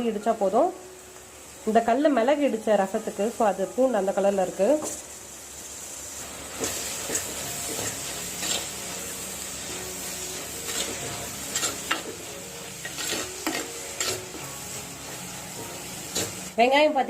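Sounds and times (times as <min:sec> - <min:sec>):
onions sizzling in hot oil: 0:00.0 - 0:17.0
spatula scraping a pan: 0:06.6 - 0:15.2.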